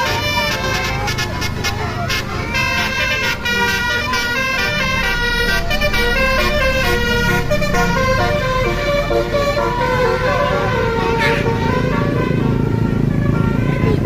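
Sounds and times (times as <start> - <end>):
bus engines running: 0.0 - 14.0
musical bus horn tune: 0.0 - 14.0.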